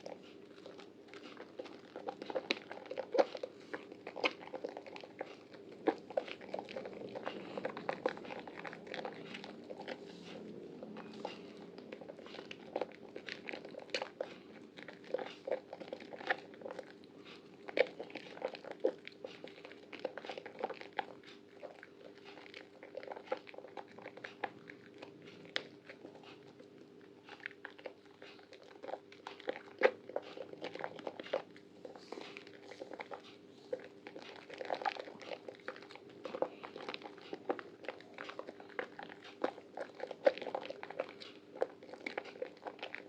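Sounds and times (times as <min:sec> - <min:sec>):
faint steady hum: 0:00.0 - 0:43.0
wet soap squishing and crackling: 0:00.0 - 0:43.0.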